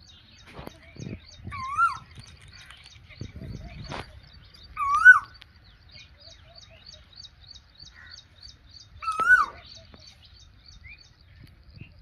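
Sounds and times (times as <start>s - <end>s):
birds chirping: 0.0s - 12.0s
bird call rising and wavering: 1.3s - 2.7s, 3.6s - 8.2s, 8.8s - 11.0s.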